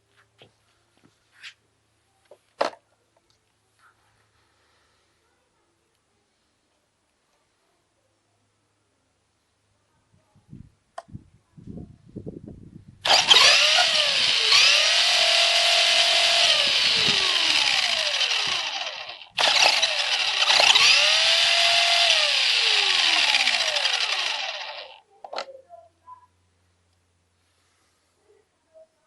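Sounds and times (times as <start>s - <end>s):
electric motor whine: 13.0s - 25.0s.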